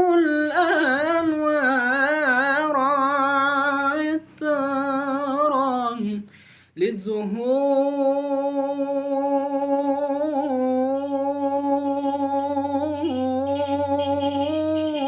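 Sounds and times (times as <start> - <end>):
person singing a long note: 7.6 - 15.0.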